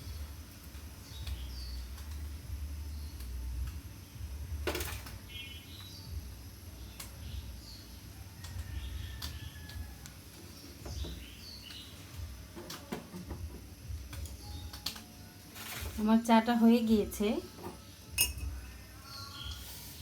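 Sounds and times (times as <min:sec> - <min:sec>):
small birds chirping: 0:00.0 - 0:15.2, 0:15.9 - 0:20.0.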